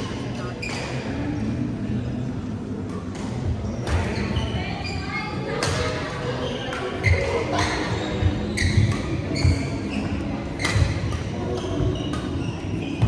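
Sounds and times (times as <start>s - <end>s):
shoe squeaks: 6.4s - 13.0s.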